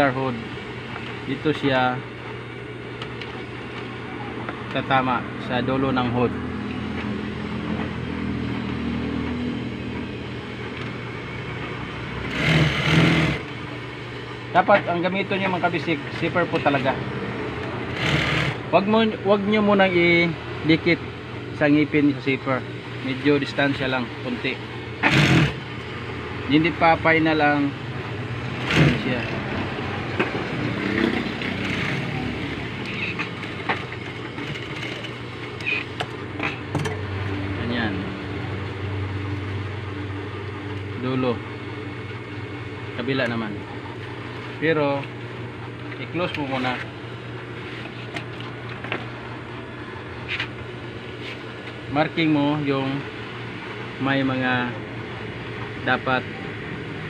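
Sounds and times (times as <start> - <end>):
sewing machine motor humming: 12.1 - 13.8, 17.5 - 18.7, 24.9 - 25.9, 28.3 - 29.3, 30.4 - 36.1
sewing machine stitching: 12.2 - 13.5, 17.9 - 18.6, 25.0 - 25.6, 28.6 - 29.2, 31.0 - 32.2.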